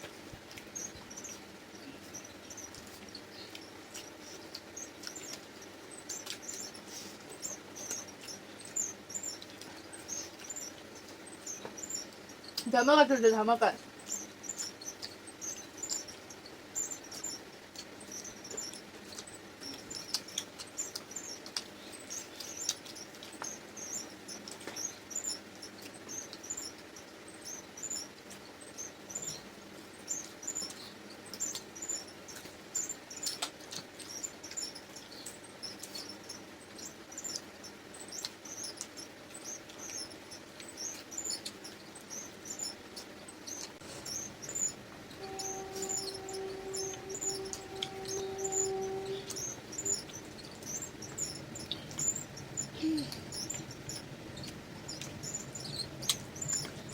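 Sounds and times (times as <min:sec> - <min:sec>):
people chewing: 0:00.0 - 0:12.7, 0:14.0 - 0:25.0, 0:29.2 - 0:36.2, 0:49.1 - 0:53.7.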